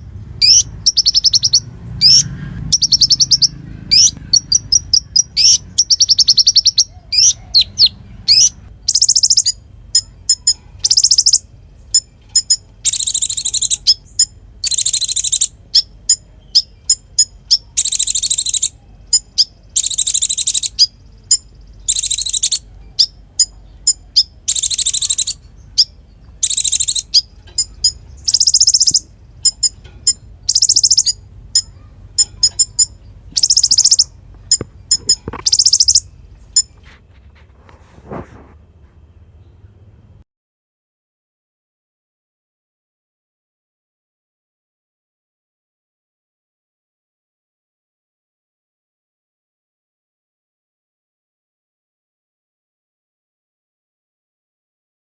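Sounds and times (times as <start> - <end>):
songbird trilling: 0.4 - 36.8.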